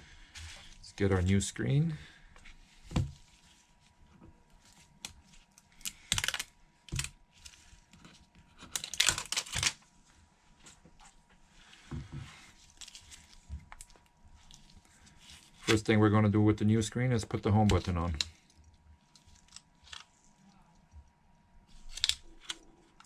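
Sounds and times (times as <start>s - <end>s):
plastic packaging crinkling: 4.6s - 9.8s.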